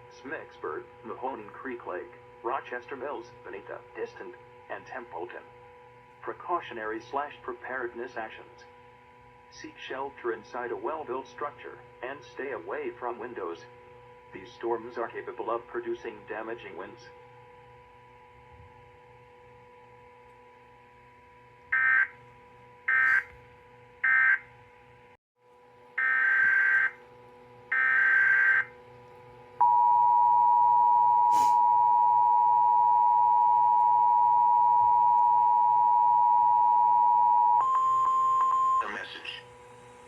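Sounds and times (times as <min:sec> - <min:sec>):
two-tone attention signal: 0:29.6 - 0:39.1.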